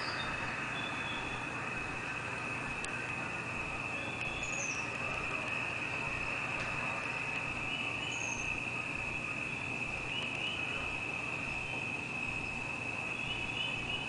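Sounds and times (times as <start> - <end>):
faint chirps: 0.0 - 14.0
insects trilling: 0.0 - 14.0
low steady hum: 0.0 - 14.0.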